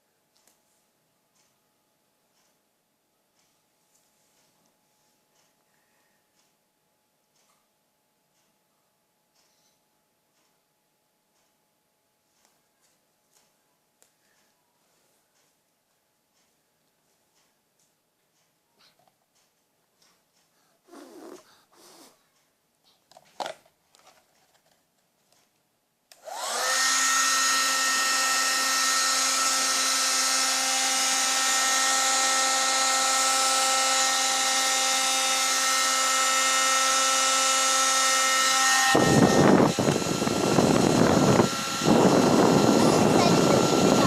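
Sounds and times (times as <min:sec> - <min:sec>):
faint handling sounds: 0:12.2 - 0:25.7
hair dryer running: 0:26.2 - 0:44.0.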